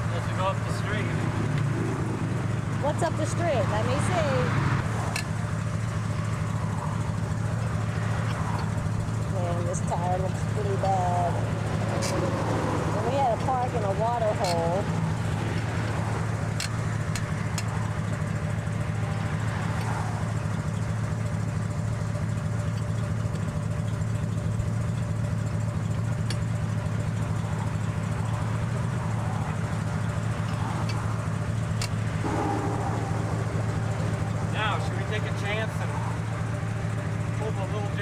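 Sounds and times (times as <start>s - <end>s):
engine idling: 0.0s - 38.0s.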